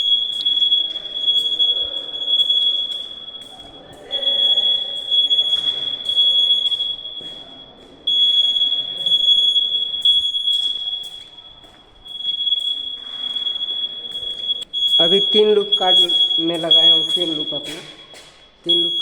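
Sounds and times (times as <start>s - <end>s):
fire alarm hooter tone: 0.0s - 19.0s.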